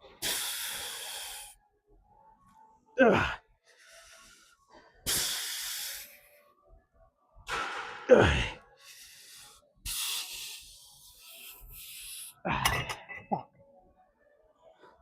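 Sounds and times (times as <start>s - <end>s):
man grunting: 3.0s - 3.4s, 8.0s - 8.6s.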